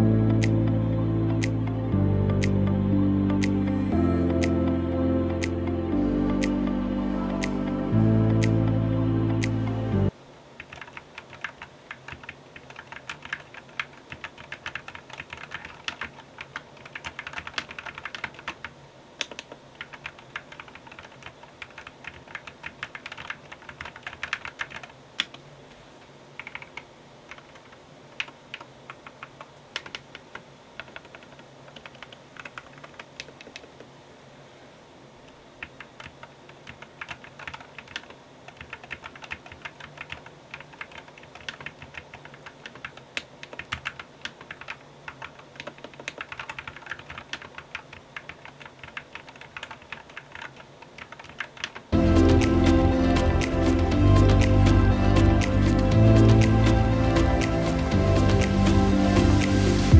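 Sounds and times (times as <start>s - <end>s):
keyboard typing clicks: 10.6s - 25.4s, 26.4s - 33.7s, 35.6s - 58.8s.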